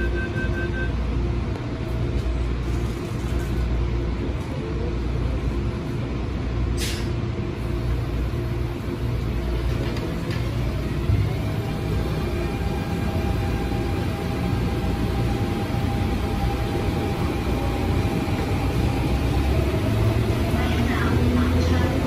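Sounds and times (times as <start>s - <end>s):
door-closing warning beeps: 0.0s - 1.0s
train rumble and motor hum: 0.0s - 22.0s.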